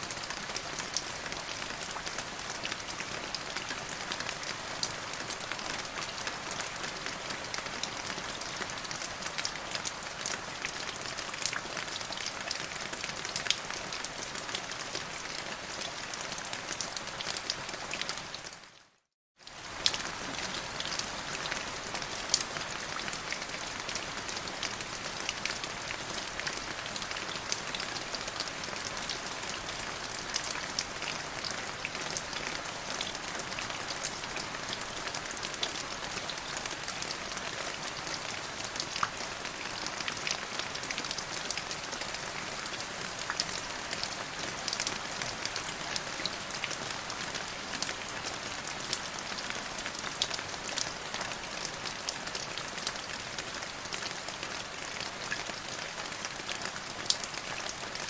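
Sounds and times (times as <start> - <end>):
rain falling: 0.0 - 58.0.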